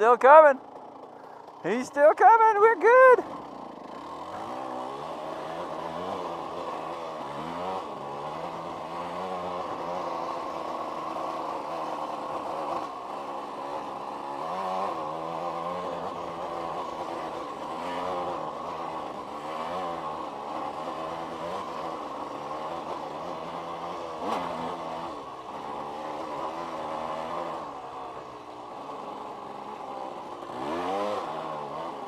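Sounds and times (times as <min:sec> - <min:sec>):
dirt bike engine revving: 0:00.0 - 0:32.0.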